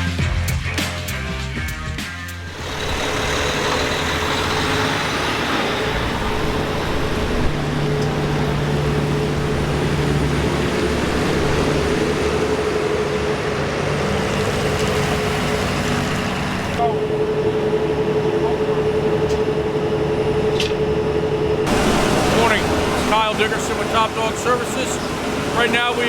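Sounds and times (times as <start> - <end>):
heavy vehicle engine running: 2.4 - 26.0.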